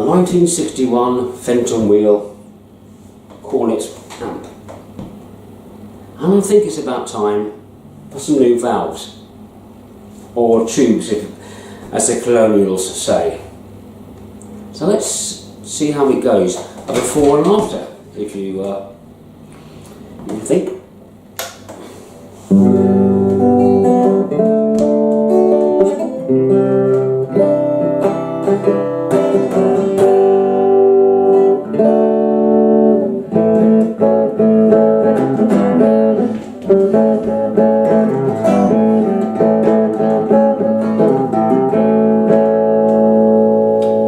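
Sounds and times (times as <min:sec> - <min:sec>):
electric guitar chords and notes: 0:22.5 - 0:44.0.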